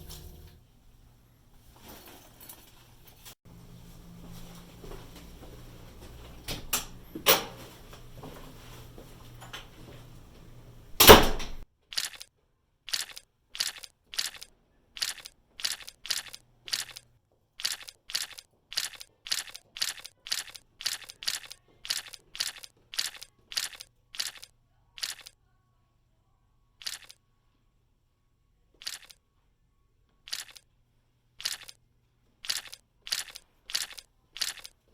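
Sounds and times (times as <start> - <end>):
evenly spaced sharp clicks: 11.9 - 12.3, 12.9 - 25.4, 26.8 - 27.2, 28.8 - 29.2, 30.3 - 30.6, 31.4 - 31.8, 32.4 - 34.8.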